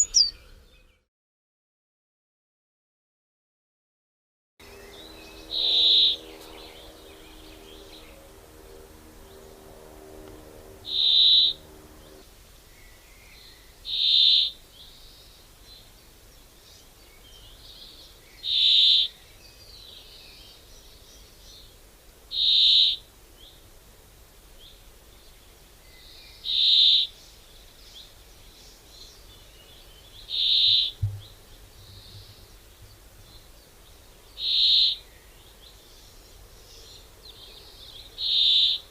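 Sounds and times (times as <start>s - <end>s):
bird short high call: 0.0s - 0.6s
faint bird chirps: 0.0s - 1.0s, 25.9s - 38.9s
low hum: 4.6s - 12.3s, 30.9s - 33.6s
low thud: 31.0s - 31.4s.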